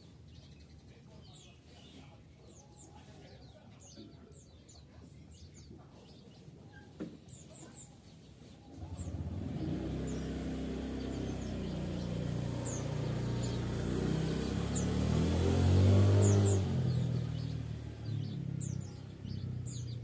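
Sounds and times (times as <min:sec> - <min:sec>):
vehicle engine passing: 0:08.8 - 0:20.0.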